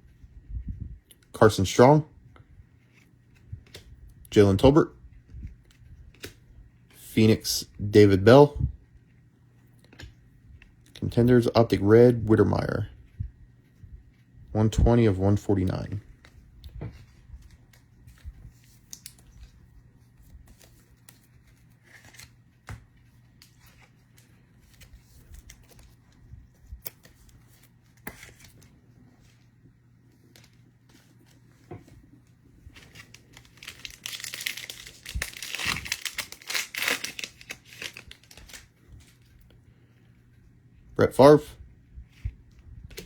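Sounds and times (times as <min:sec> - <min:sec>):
foil wrapper tearing and crinkling: 0:32.8 - 0:38.7.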